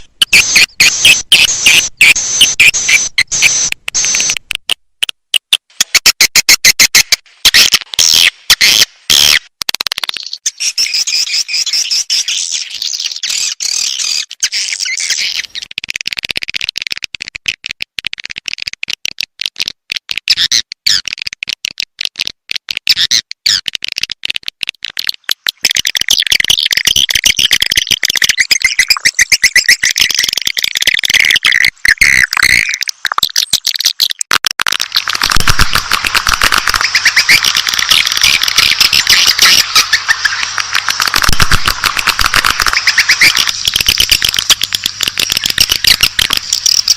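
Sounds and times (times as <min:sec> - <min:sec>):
swiftlet twittering chirps: 0:25.8 - 0:32.8, 0:36.2 - 0:46.9.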